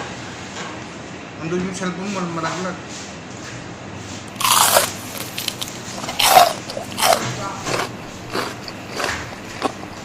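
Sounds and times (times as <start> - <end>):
fried chicken skin crunching: 4.3 - 10.0.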